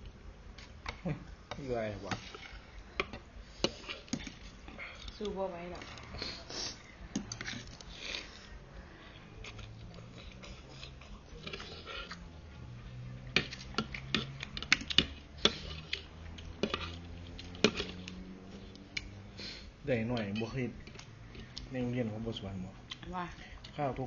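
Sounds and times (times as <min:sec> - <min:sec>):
utensils clinking against bowl: 0:20.1 - 0:21.6.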